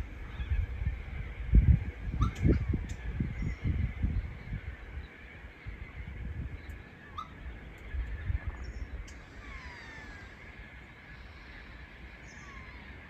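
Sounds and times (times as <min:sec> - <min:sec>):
high-pitched bird chorus: 0:00.0 - 0:13.0
short bird calls: 0:08.6 - 0:13.0.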